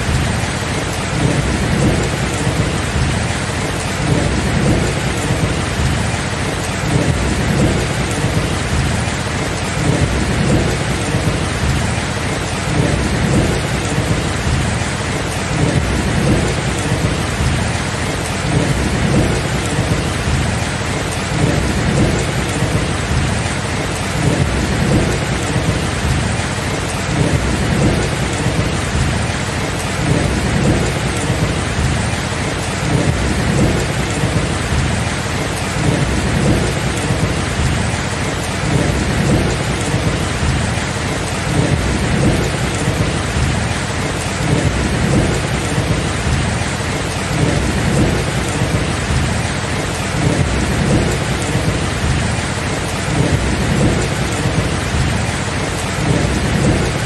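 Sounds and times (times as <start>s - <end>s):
heavy rain falling: 0.0s - 57.0s
low rolling thunder: 0.0s - 57.0s.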